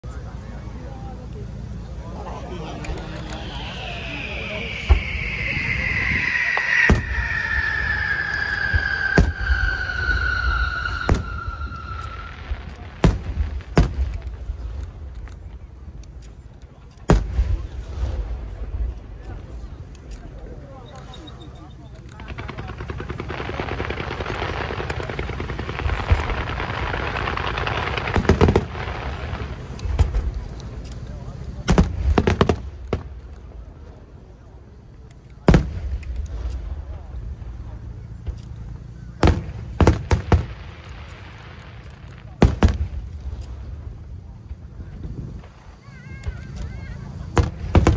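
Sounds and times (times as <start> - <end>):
fireworks bangs: 2.2 - 15.6, 17.1 - 19.7, 20.9 - 34.0, 35.4 - 47.9
whistling tone falling in pitch: 3.0 - 12.7.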